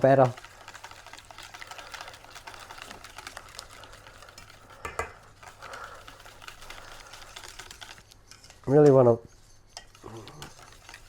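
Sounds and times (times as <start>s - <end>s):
utensil scraping mixing bowl: 0.0s - 11.0s
utensil knocking bowl: 4.8s - 5.2s.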